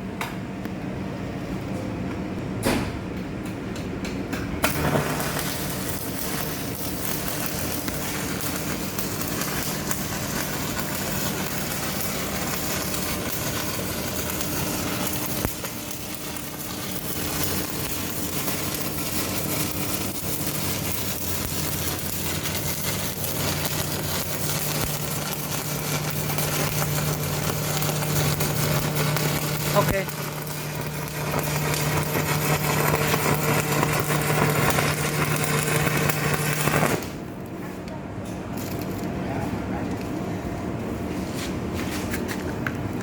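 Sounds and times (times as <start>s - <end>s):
low welder hum: 0.0s - 43.0s
arc welding crackling: 4.6s - 37.6s, 38.5s - 39.1s
welding rod scratches: 4.7s - 37.1s.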